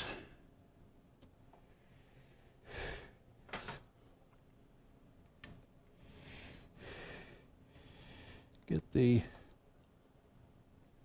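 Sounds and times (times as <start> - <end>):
faint breaths: 1.6 - 4.2, 5.9 - 8.6
small clicks of parts handled: 5.2 - 5.7.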